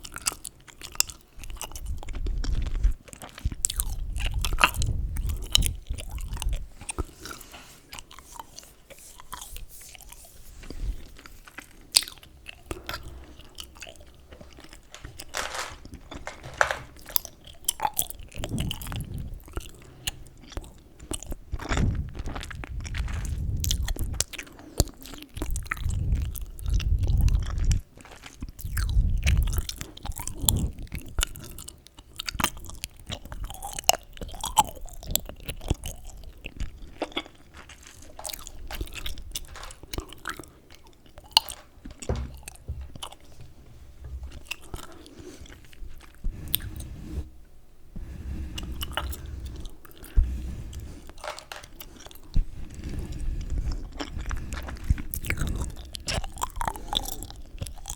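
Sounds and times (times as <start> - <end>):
gum chewing mouth smacks: 17.1 - 36.8, 53.8 - 57.9
low jaw thumps: 18.4 - 19.3.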